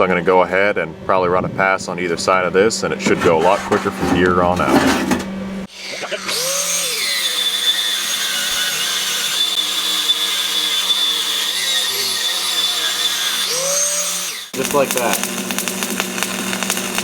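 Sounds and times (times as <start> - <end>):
welding arc hissing: 14.6 - 17.0.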